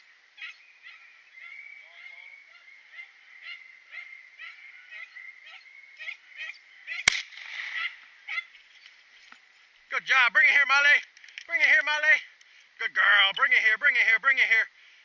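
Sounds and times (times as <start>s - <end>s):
hounds baying: 0.4s - 9.8s
shotgun blast: 7.0s - 8.1s.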